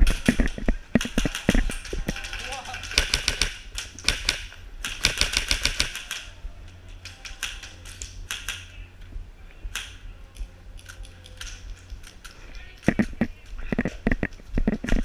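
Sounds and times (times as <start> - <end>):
airsoft guns firing: 0.0 - 6.3.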